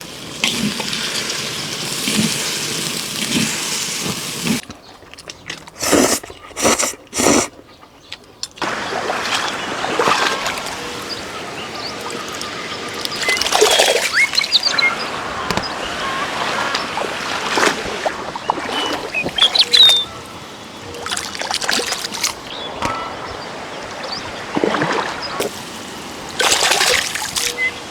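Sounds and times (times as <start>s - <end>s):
stream flowing and splashing: 0.0s - 6.0s, 8.5s - 27.9s
short high calls: 9.4s - 17.7s, 18.4s - 24.4s.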